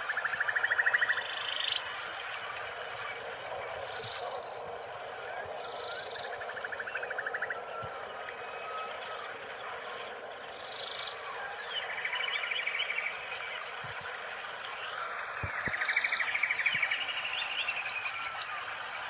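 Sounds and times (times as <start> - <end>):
steady background hum: 0.0 - 19.0.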